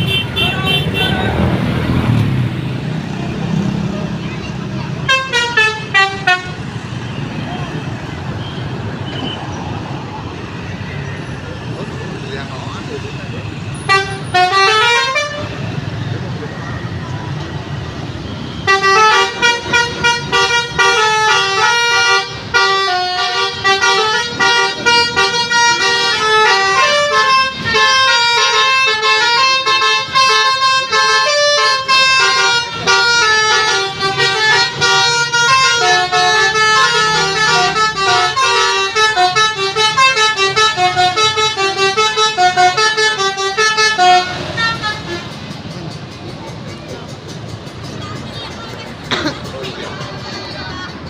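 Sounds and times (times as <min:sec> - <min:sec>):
bus musical horn melody: 0:00.0 - 0:01.3, 0:05.0 - 0:07.2, 0:13.8 - 0:15.7, 0:18.5 - 0:45.4.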